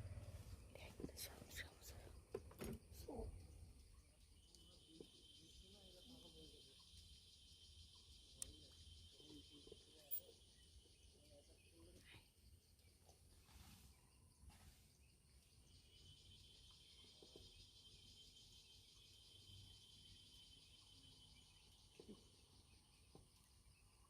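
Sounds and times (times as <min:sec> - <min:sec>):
high-pitched insect chorus: 0:00.0 - 0:24.0
soft low murmurs: 0:00.1 - 0:02.3.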